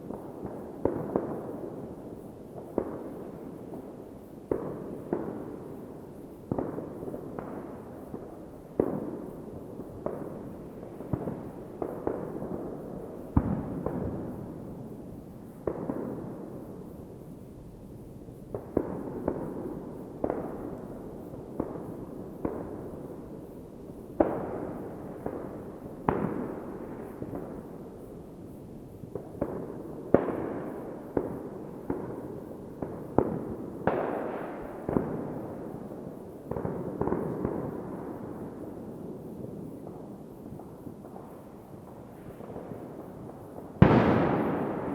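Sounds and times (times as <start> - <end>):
distant fireworks bangs: 2.6 - 3.9, 6.5 - 14.9, 15.5 - 17.0, 18.5 - 27.8, 29.1 - 38.7, 39.6 - 44.9.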